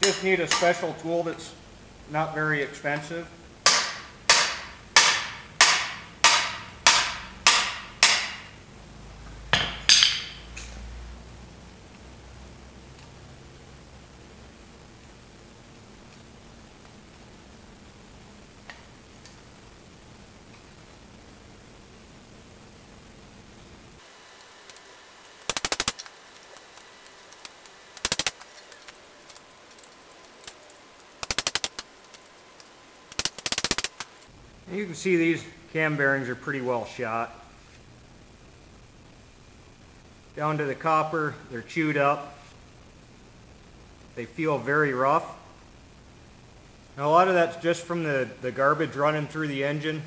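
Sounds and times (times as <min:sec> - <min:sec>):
hammer striking metal tool: 0:00.0 - 0:00.9, 0:03.7 - 0:08.6, 0:09.5 - 0:10.5.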